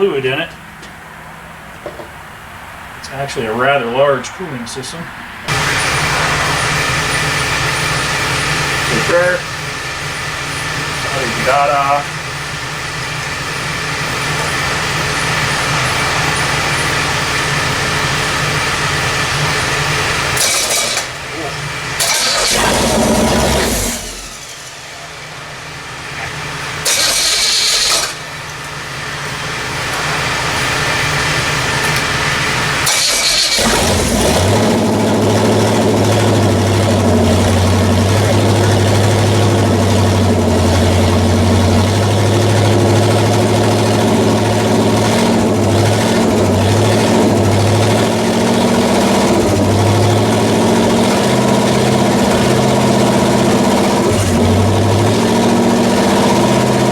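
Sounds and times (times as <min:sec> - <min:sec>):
car engine running steadily: 0:05.4 - 0:56.9
car engine cranking: 0:05.5 - 0:56.9.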